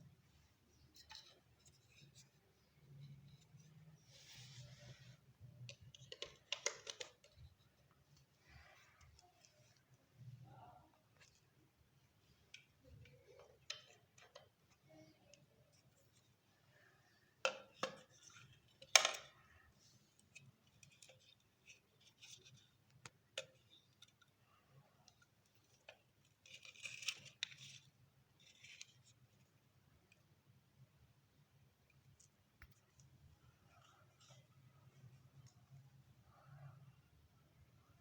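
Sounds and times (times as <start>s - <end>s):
small hard objects clicking and knocking: 5.6s - 7.4s.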